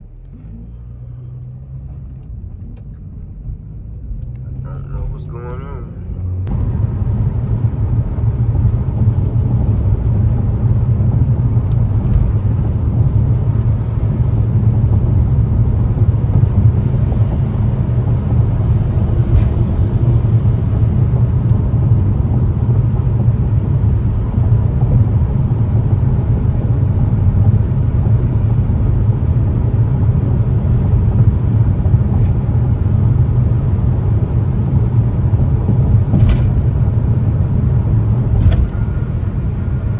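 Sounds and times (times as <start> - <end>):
truck engine and road noise: 0.0 - 39.9.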